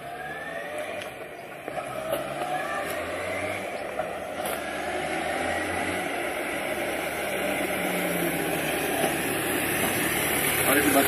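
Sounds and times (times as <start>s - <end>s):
motorcycle engine idling: 9.0s - 11.0s.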